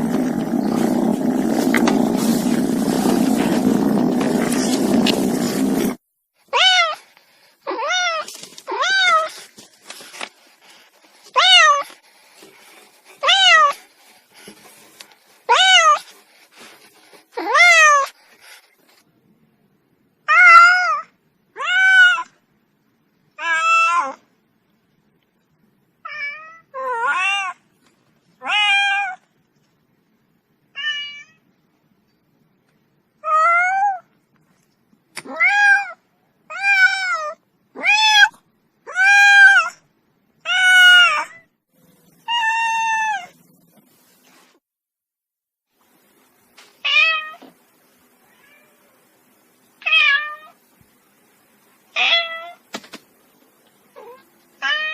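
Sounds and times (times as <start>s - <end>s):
cat meowing: 48.2s - 49.0s, 52.0s - 52.6s.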